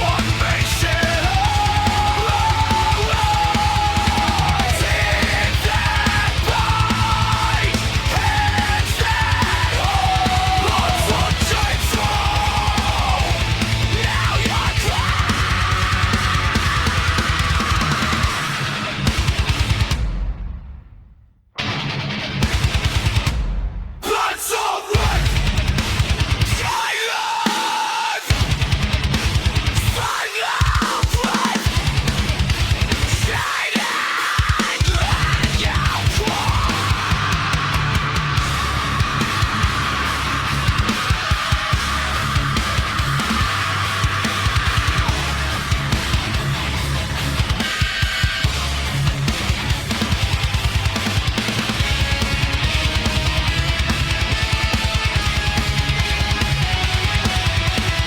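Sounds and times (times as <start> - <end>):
distorted lead guitar: 0.0 - 20.7, 21.6 - 58.0
fast metal drum beat: 0.0 - 20.8, 21.6 - 58.0.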